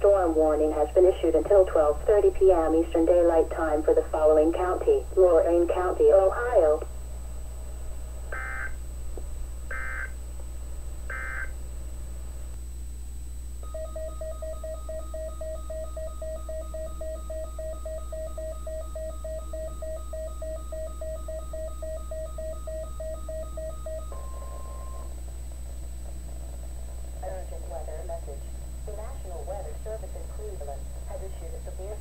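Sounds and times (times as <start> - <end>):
digital data tone screeching: 8.4 - 8.8, 9.7 - 10.2, 11.1 - 11.5
weather radio alert beeps: 8.4 - 8.8, 9.7 - 10.2, 11.1 - 11.5.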